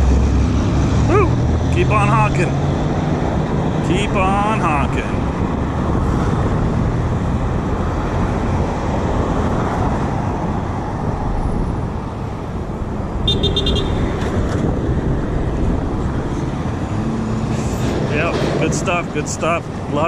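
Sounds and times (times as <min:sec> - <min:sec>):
road traffic rushing past: 0:00.0 - 0:20.0
car horn honk: 0:13.2 - 0:14.1.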